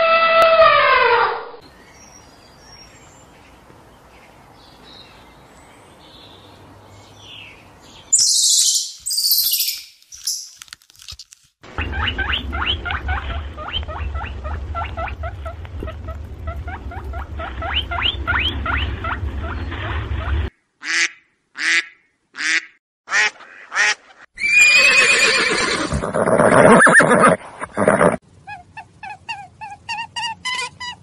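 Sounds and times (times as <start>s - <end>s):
drawn-out animal call: 11.8s - 20.4s, 24.4s - 31.0s.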